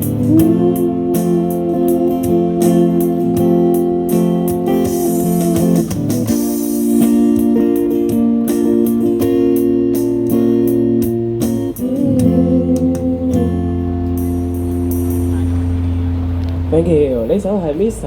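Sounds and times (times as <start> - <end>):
wavering held note: 0.0 - 5.8
strummed guitar: 0.0 - 17.0.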